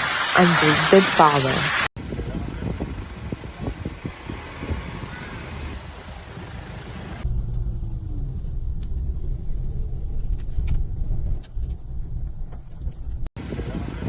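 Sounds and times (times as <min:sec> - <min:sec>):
car driving rumble: 0:03.9 - 0:13.3.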